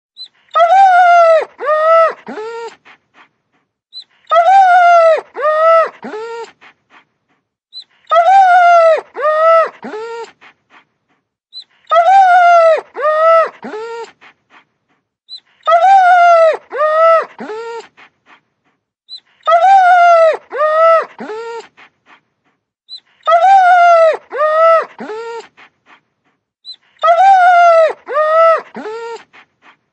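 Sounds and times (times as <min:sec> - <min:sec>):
dog whining: 0:26.6 - 0:29.8.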